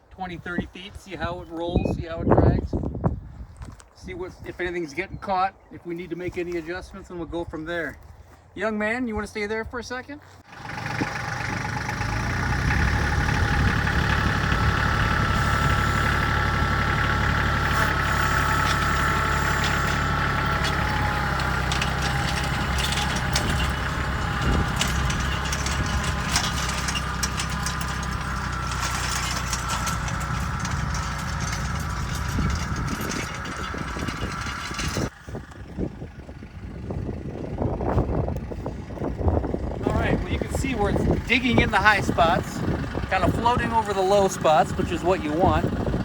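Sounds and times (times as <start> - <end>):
tractor engine running: 10.4 - 46.0
harrow clicks and clanks: 10.6 - 35.2.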